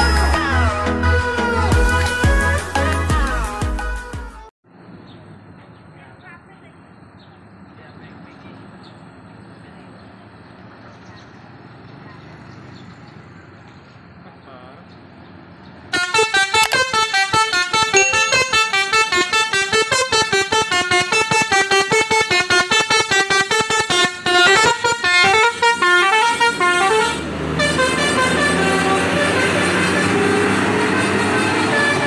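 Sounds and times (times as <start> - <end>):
bus horn playing melody: 15.9 - 32.0.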